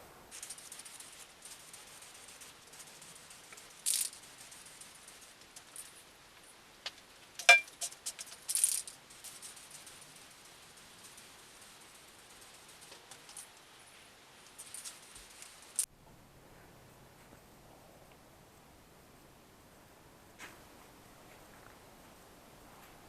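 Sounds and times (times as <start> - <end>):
aerosol spray hissing: 0.3 - 6.0
spray can mixing ball rattling: 0.3 - 15.9.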